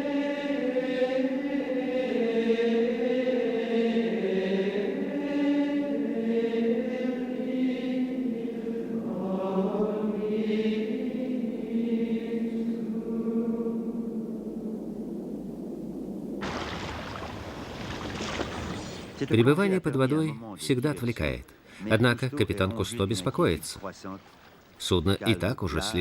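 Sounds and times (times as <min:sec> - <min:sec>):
wordless choral chanting: 0:00.0 - 0:16.1.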